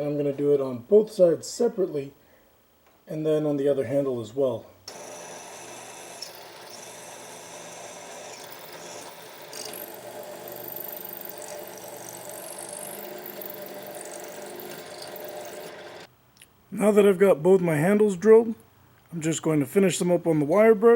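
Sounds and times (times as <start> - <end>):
electric drill boring metal: 4.9 - 16.1.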